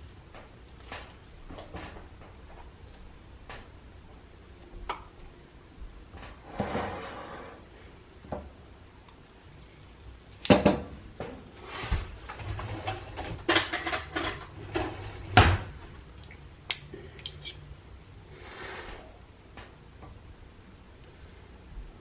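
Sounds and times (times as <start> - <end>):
utensils and dishes clattering: 12.3 - 15.6.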